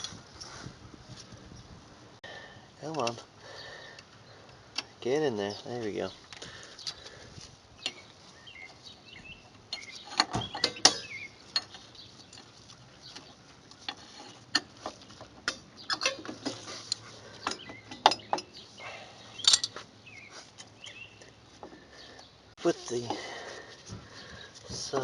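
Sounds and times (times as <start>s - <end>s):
metal brake parts clinking: 19.3s - 19.8s.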